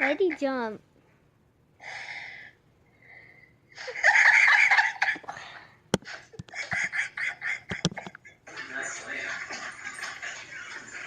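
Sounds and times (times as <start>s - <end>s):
person laughing: 3.8s - 5.3s, 6.0s - 8.4s.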